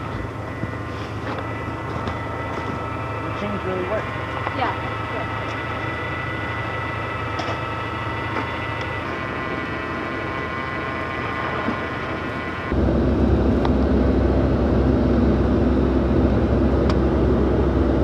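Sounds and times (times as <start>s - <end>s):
tire chains in deep snow: 0.0s - 12.7s
pickup truck engine running: 0.0s - 18.0s.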